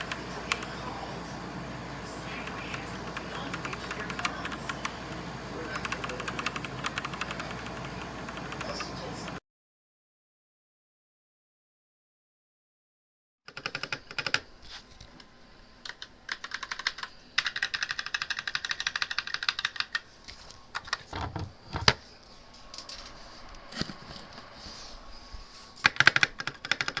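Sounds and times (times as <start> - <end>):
mechanical keyboard typing: 0.0 - 0.8, 2.3 - 9.4, 13.5 - 14.4, 15.8 - 20.0, 25.8 - 27.0.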